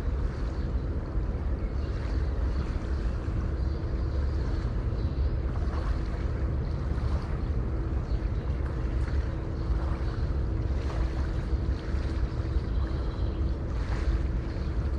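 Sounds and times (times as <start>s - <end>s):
deep rumble: 0.0s - 14.9s
faint steady hum: 0.0s - 14.9s
sea waves washing: 5.4s - 14.9s.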